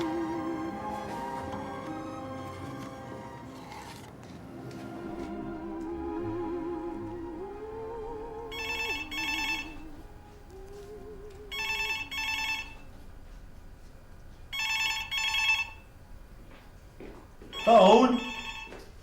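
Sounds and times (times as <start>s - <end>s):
soft background music note: 0.0s - 16.4s
telephone double ring: 8.5s - 9.8s, 11.5s - 12.8s, 14.5s - 15.8s, 17.6s - 18.8s.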